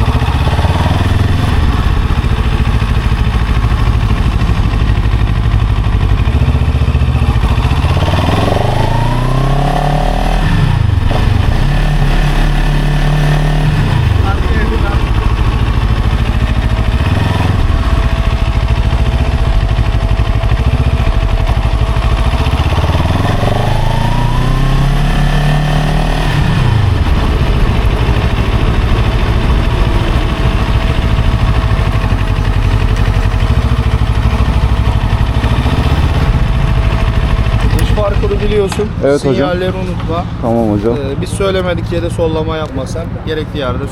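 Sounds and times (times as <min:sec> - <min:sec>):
motorcycle engine revving: 0:00.0 - 0:43.9.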